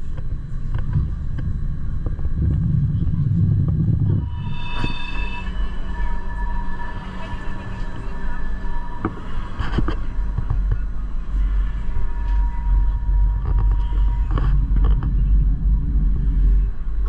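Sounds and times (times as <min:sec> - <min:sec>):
faint steady whine: 0:00.0 - 0:17.0
train rumble: 0:00.0 - 0:17.0.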